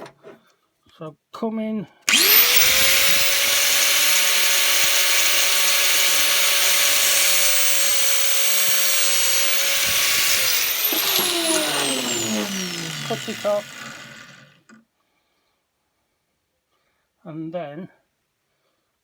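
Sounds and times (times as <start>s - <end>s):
angle grinder whine: 2.1s - 14.8s.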